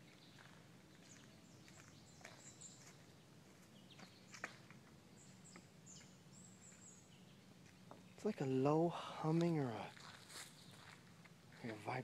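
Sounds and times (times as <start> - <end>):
small bird chirps: 0.0 - 8.5
faint low hum: 0.0 - 12.0.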